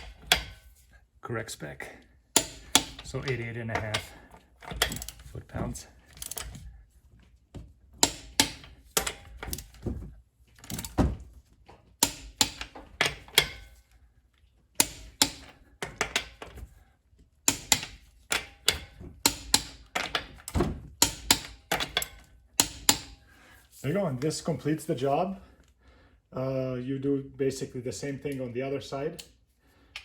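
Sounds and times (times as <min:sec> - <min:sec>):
torque wrench ratcheting clicks: 0:04.7 - 0:05.3.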